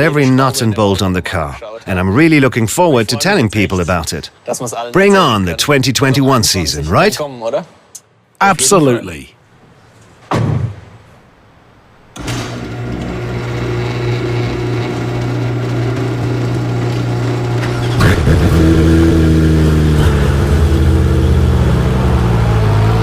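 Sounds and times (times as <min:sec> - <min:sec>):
car engine running: 0:12.6 - 0:23.0.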